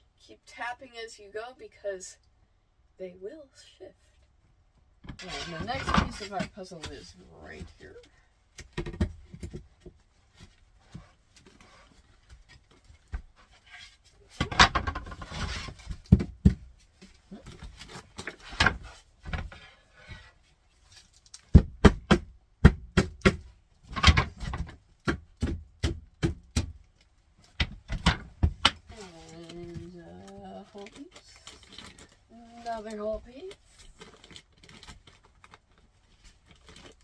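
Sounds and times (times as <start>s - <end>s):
planks scraping and clattering: 5.1s - 7.8s, 13.2s - 16.5s.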